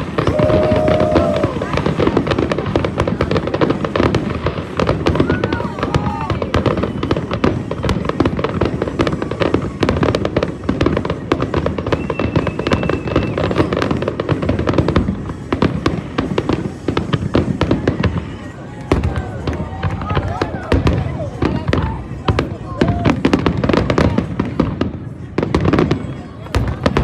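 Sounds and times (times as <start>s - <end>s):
fireworks bangs and crackles: 0.0s - 27.0s.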